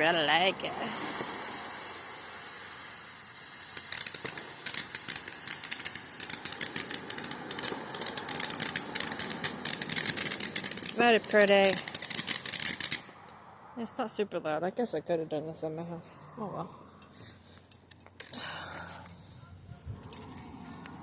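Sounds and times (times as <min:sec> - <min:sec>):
firework hiss: 0:00.0 - 0:13.6
dense crackle of small pops: 0:01.0 - 0:13.3.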